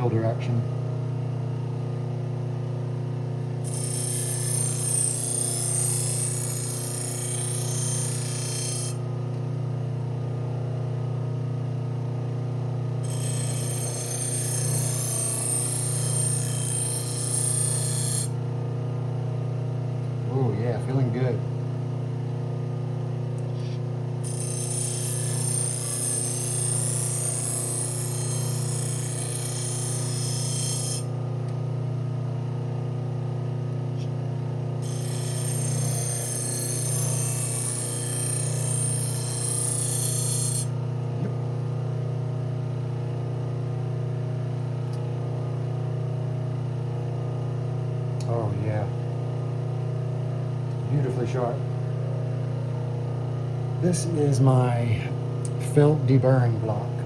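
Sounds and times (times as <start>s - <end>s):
electric motor humming: 3.6s - 9.0s, 13.0s - 18.4s.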